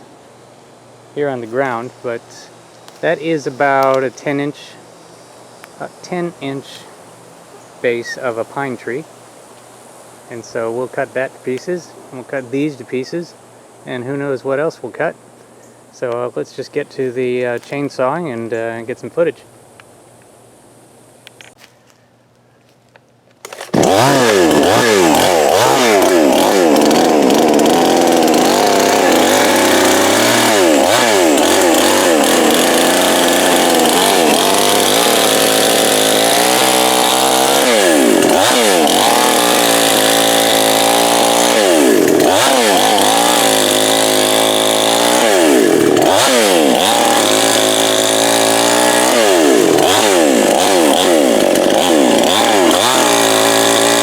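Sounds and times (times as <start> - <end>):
chainsaw cutting wood: 23.4 - 54.0.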